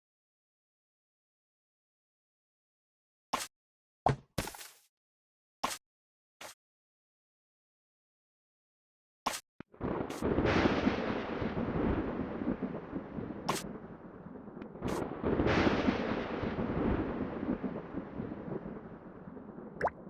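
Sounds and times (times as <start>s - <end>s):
thunder rolling: 9.8s - 20.0s.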